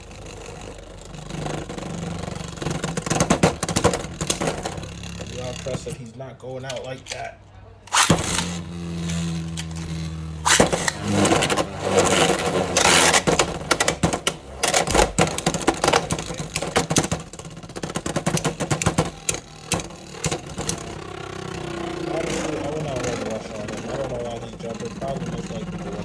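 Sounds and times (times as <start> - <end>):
spinning tops whirring: 0.0 - 26.0
spinning tops clattering: 7.9 - 21.1.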